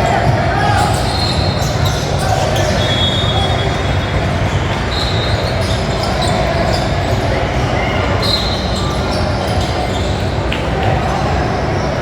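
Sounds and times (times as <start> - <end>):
court noise: 0.0 - 12.0
shoe squeaks: 4.7 - 7.3, 8.2 - 10.4.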